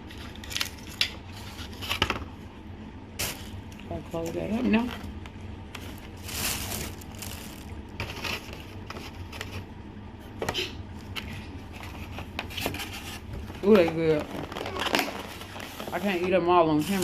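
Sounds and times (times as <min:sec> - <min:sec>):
crunching tacos: 0:00.0 - 0:02.0.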